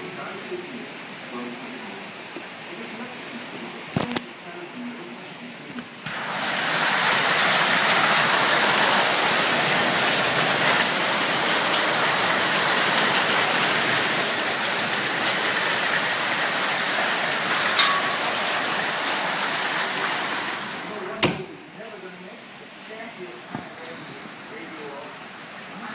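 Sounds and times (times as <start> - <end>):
hail and rain pelting down: 6.1 - 21.2.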